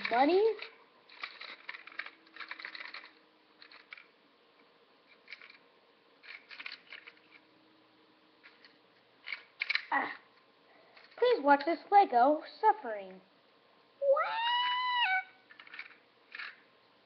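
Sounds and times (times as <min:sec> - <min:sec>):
small plastic pieces clicking: 0:00.0 - 0:05.6, 0:06.2 - 0:07.4, 0:08.4 - 0:10.0, 0:15.4 - 0:16.7.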